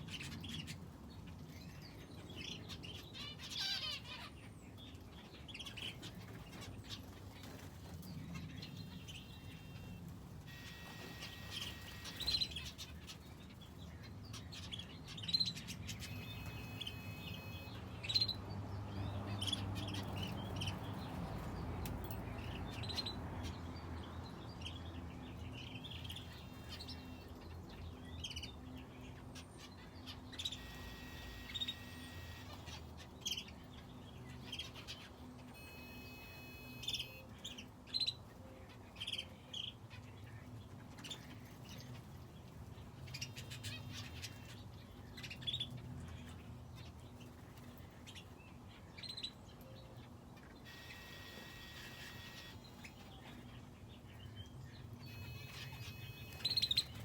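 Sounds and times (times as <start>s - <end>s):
finches and canary chirping: 0.0s - 57.0s.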